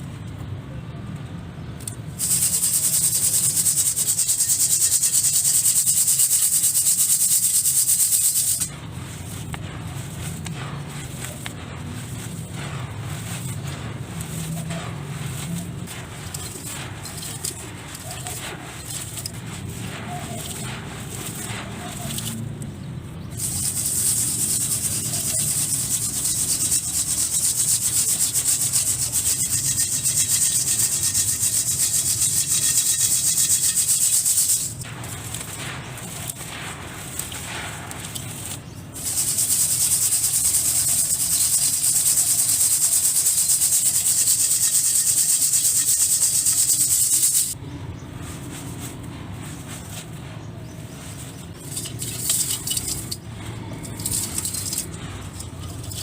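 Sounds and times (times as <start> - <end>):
dry material crumbling: 7.8 - 27.3, 34.8 - 39.5, 47.6 - 56.0.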